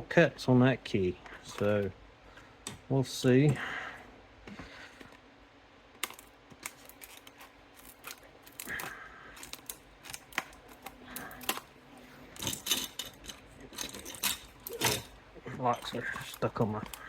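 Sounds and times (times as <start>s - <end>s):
scissors cutting plastic packaging: 6.0s - 11.7s.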